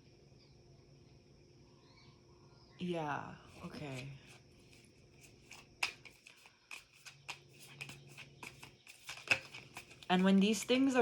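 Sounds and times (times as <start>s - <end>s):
faint steady hum: 0.0s - 11.0s
cards clicking and tapping: 4.3s - 10.7s.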